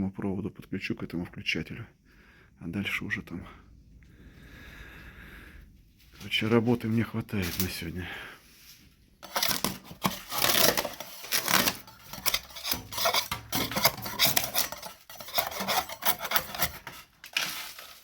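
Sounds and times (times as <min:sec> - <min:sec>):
hand tool scraping hard surface: 0:09.2 - 0:18.0.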